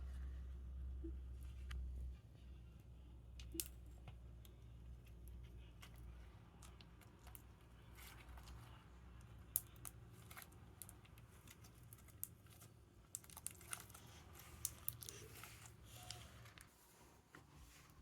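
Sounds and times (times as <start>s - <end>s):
slime clicking and crackling: 9.4s - 16.2s.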